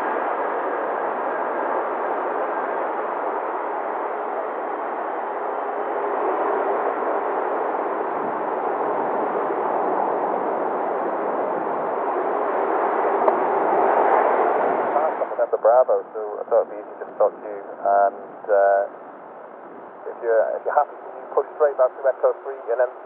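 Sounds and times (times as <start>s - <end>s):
radio static hiss: 14.8s - 19.0s, 20.0s - 23.0s.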